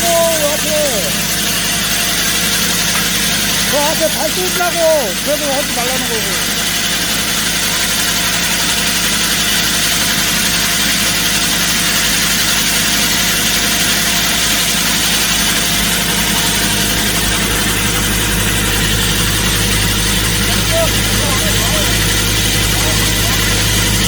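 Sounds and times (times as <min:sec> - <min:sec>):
diesel engine drone: 0:00.0 - 0:24.0.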